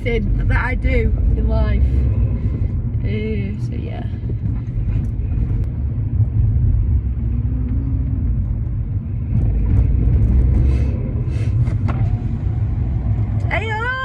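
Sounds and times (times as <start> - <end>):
car engine and road noise: 0.0 - 14.0.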